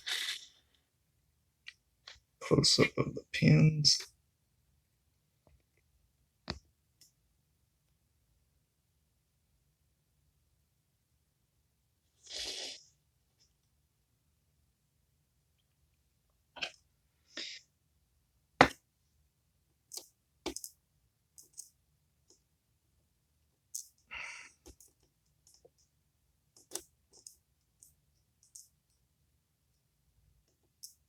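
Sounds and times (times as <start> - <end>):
small metal parts clicking: 21.4 - 21.7.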